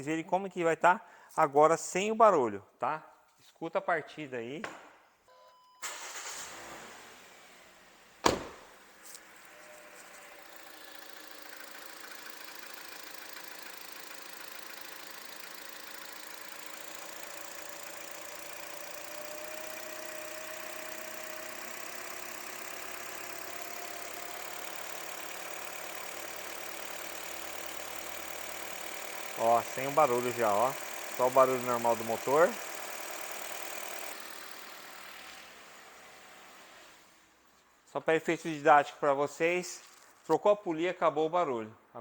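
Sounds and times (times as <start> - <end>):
car engine starting and idling: 5.4 - 37.2
sharp knock: 8.2 - 8.7.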